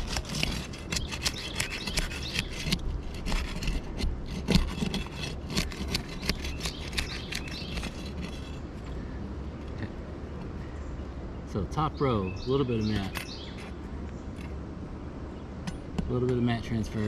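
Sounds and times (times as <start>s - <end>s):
roof shingles being pried up: 0.0s - 8.6s
scraping with crackles and clicks: 0.0s - 8.8s.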